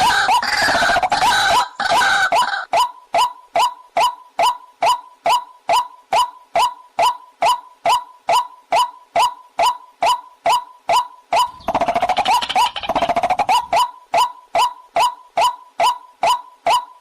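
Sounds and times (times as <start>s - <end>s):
waterhen calls: 0.0s - 5.4s, 11.4s - 14.3s.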